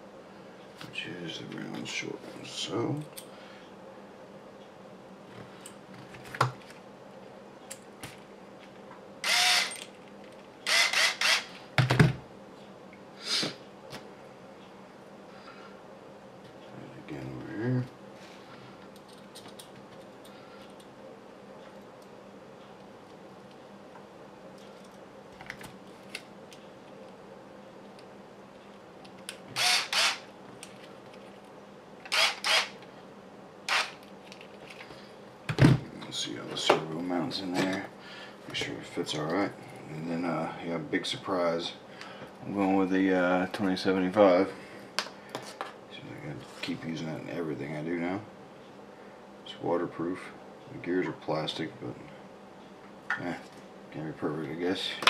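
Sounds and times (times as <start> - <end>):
electric screwdriver whirring: 9.2 - 9.8, 10.7 - 11.5, 29.6 - 30.2, 32.1 - 32.8, 33.7 - 34.0
faint clicks of small parts: 18.8 - 20.9.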